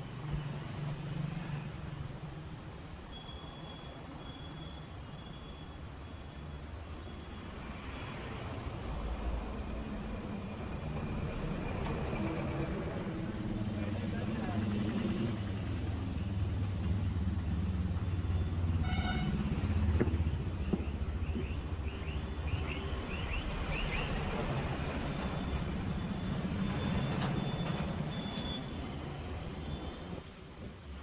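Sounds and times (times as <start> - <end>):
road traffic: 0.0 - 31.0
vehicle horn toot: 18.8 - 19.5.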